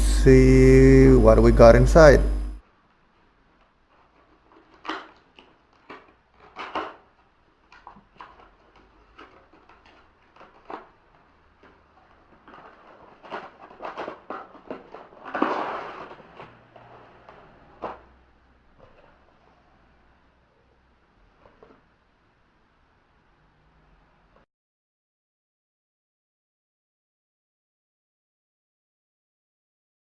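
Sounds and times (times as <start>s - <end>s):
packaging rustle: 2.8s - 20.3s
cardboard box being opened: 4.0s - 18.2s.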